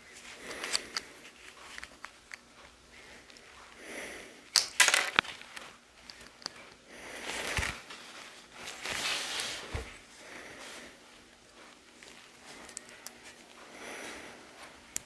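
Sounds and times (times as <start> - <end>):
plastic pieces clicking together: 4.5 - 6.7
soft rustling: 5.1 - 15.0.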